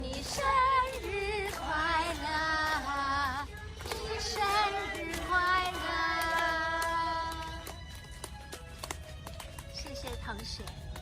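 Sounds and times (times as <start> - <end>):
high voices singing with vibrato: 0.1 - 7.4.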